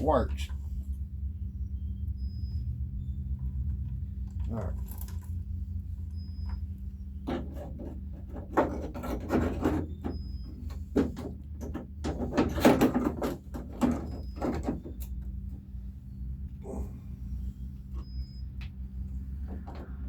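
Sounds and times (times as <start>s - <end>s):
door latch scraping and clunking: 7.2s - 15.2s.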